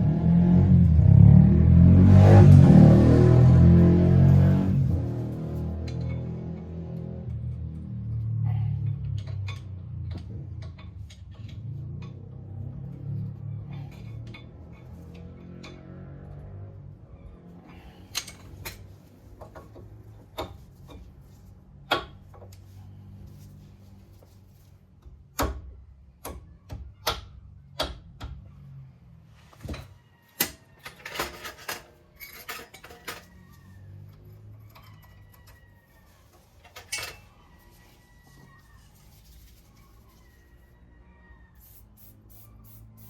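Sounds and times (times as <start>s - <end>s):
metal tools clinking: 30.8s - 33.4s, 36.4s - 37.4s.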